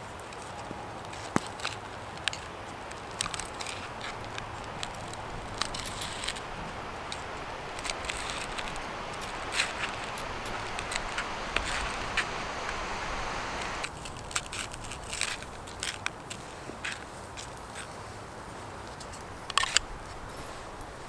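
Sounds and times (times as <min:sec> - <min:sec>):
wood fire crackling: 0:00.0 - 0:16.6
steady hiss: 0:01.2 - 0:15.8.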